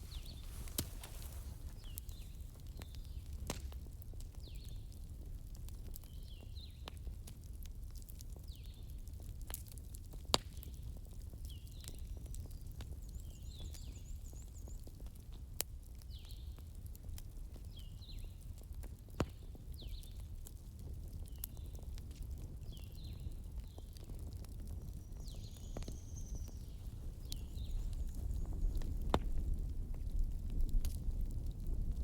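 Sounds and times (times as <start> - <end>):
birds chirping: 0.0 - 2.4
wood fire crackling and popping: 0.0 - 32.0.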